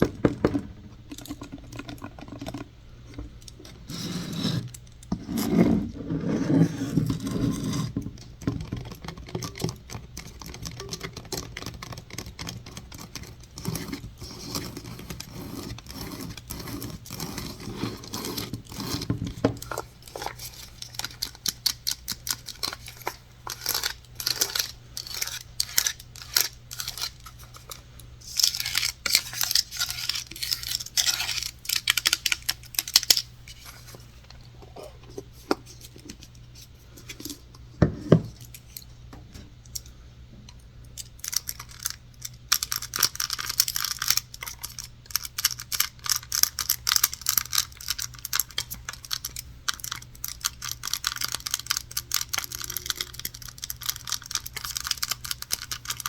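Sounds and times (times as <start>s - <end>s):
tapping and scratching on props: 0.0s - 38.8s.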